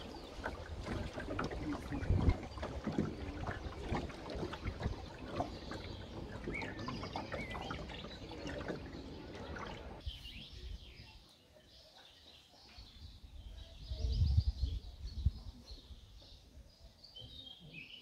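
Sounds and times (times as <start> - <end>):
trickling water: 0.0 - 10.0
small birds chirping: 0.0 - 18.0.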